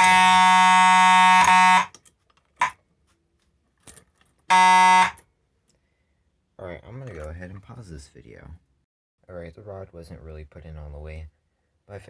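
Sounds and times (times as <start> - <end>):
fire alarm horn blasts: 0.0 - 1.9, 4.5 - 5.2.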